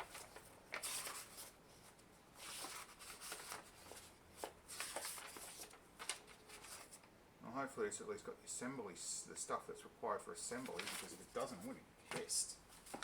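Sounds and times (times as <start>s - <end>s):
paper and packaging rustling: 0.0s - 7.1s, 10.5s - 13.0s.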